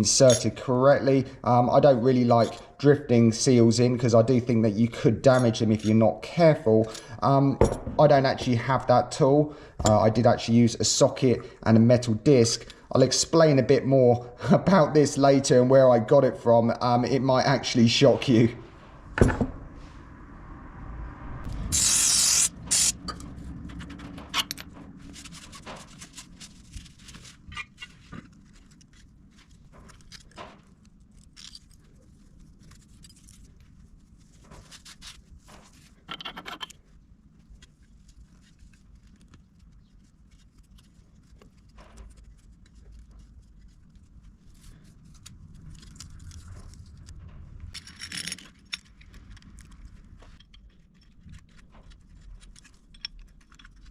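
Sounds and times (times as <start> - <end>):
metal parts scraping: 31.2 - 31.9, 47.7 - 51.4.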